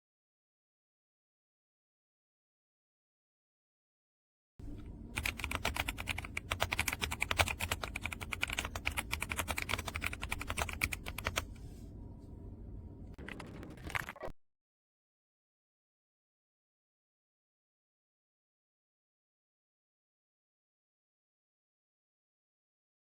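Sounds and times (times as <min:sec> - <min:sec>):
mechanical keyboard typing: 0:05.1 - 0:11.5.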